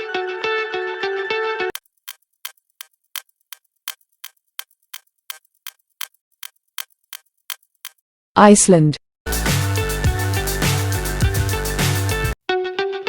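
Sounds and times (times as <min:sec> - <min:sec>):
clock ticking: 0:01.7 - 0:08.0
short music: 0:09.3 - 0:12.4.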